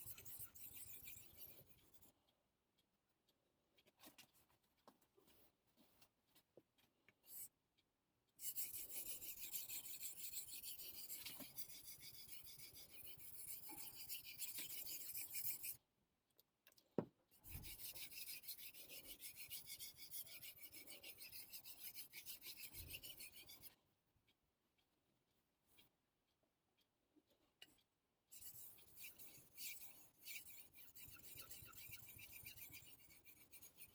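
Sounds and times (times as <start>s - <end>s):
knife scraping on whetstone: 0.0s - 1.7s, 8.4s - 15.8s, 17.5s - 23.7s, 28.4s - 33.9s.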